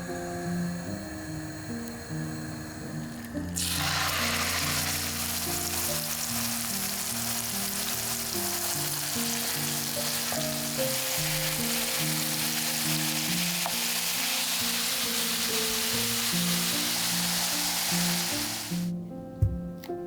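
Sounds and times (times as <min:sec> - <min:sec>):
background music: 0:00.0 - 0:20.0
food sizzling in a hot pan: 0:00.4 - 0:18.9.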